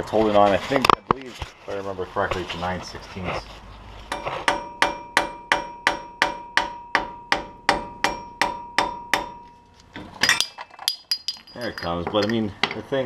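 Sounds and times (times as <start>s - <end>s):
hammer striking metal: 4.1s - 9.6s.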